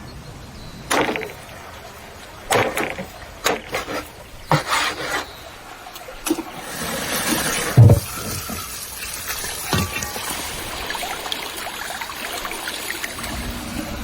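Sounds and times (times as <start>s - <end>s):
water trickling and splashing: 0.5s - 14.0s
dull thump: 7.8s - 8.6s.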